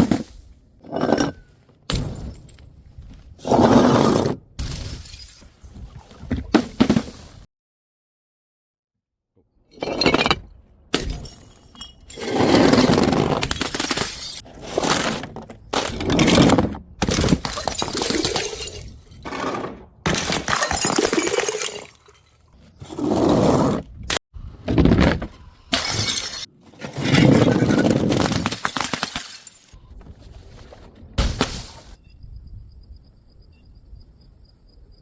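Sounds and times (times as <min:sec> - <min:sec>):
glass bottles smashing on stairs: 0:09.8 - 0:14.4, 0:17.0 - 0:19.2, 0:20.1 - 0:22.4, 0:25.7 - 0:29.8.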